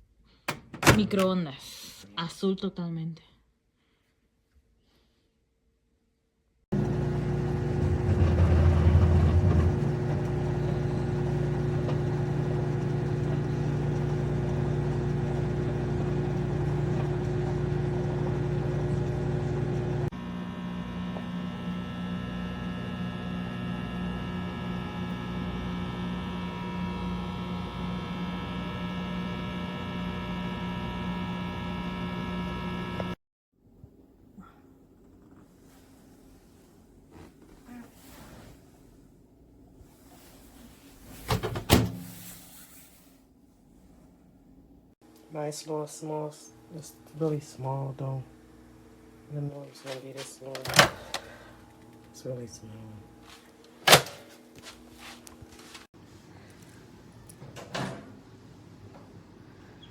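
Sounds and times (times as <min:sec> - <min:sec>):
microwave oven humming: 0:06.7 - 0:33.2, 0:44.2 - 0:59.9.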